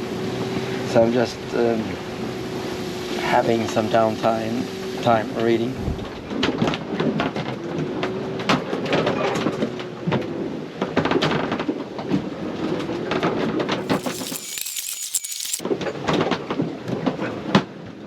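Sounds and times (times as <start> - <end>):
wind: 13.8 - 15.6.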